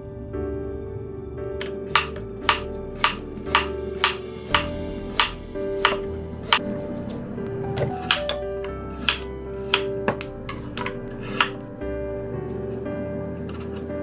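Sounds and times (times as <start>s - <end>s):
soft background music: 0.0s - 14.0s
knife chopping on cutting board: 1.6s - 6.6s, 7.8s - 8.4s, 9.0s - 11.6s.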